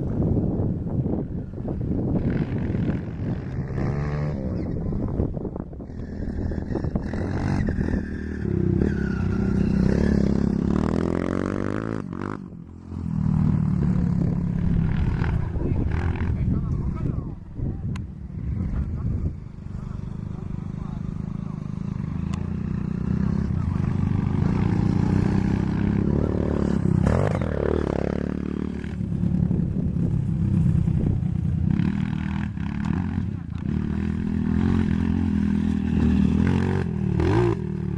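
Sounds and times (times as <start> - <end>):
dirt bike engine revving: 5.9 - 16.4, 19.8 - 37.9.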